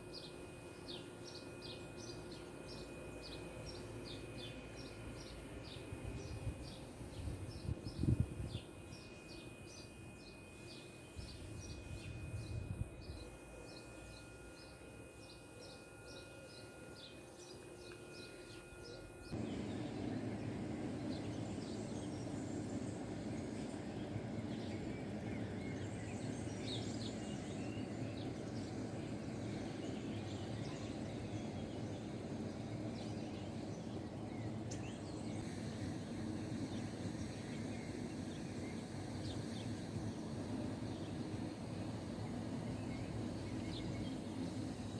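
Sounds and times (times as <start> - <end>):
thin steady whine: 0.0 - 44.9
small birds chirping: 13.1 - 44.9.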